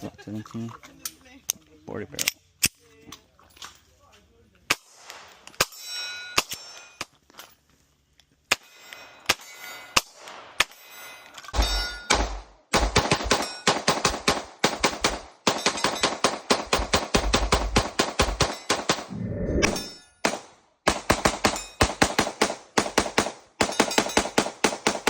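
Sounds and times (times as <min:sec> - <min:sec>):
metallic ringing: 0:05.6 - 0:07.0, 0:10.7 - 0:12.2, 0:19.6 - 0:20.2
pistol shots: 0:11.6 - 0:19.1, 0:20.2 - 0:25.0.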